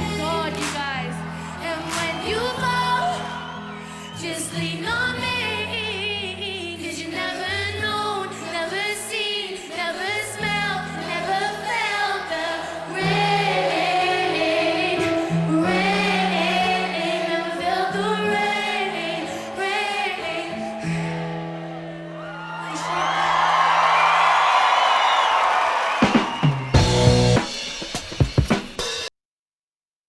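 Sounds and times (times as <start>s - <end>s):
backing voices singing: 0.0s - 23.5s
woman singing lead vocal: 0.0s - 23.5s
bass and synth chords: 26.8s - 27.5s.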